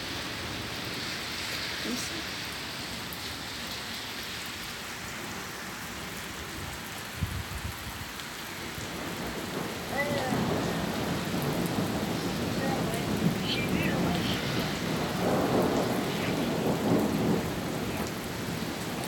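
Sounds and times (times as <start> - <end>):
steady rain falling: 0.0 - 19.0
thunder rumbling: 8.8 - 19.0.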